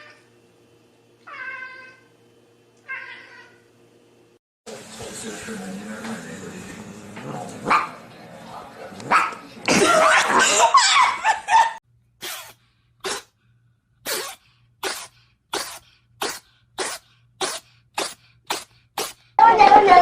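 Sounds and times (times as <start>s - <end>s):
cat sneezing: 12.2s - 13.4s, 14.0s - 19.2s.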